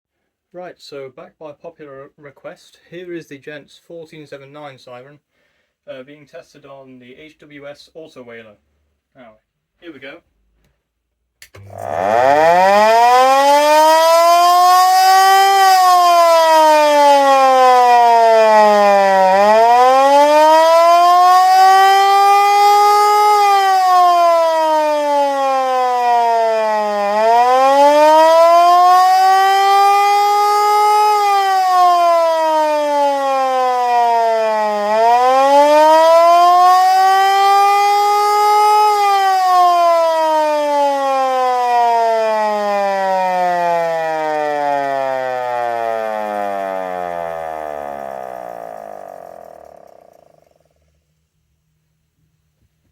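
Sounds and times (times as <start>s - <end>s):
air raid siren wailing: 11.5s - 50.7s.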